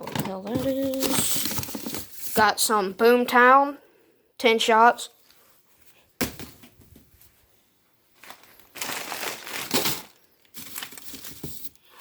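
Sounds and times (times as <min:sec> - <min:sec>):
packaging crinkling and rustling: 0:00.0 - 0:02.5, 0:08.1 - 0:11.9.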